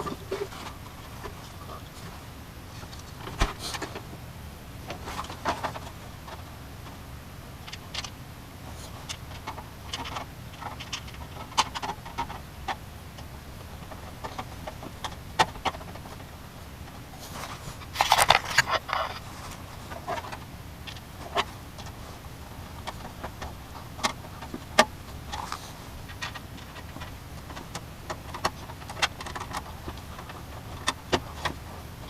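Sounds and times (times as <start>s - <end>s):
steady low hum: 0.0s - 32.0s
clicks and scrapes of parts: 7.7s - 16.3s, 16.9s - 32.0s.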